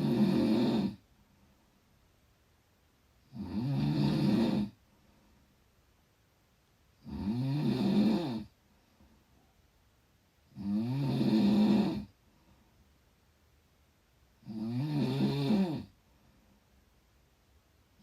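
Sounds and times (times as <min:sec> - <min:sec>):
snoring: 0:00.0 - 0:01.0, 0:03.3 - 0:04.8, 0:07.0 - 0:08.6, 0:10.5 - 0:12.2, 0:14.4 - 0:16.0.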